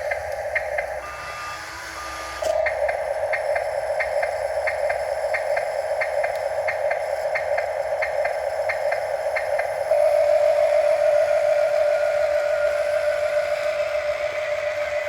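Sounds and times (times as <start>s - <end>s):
small electric motor whining: 1.0s - 2.8s.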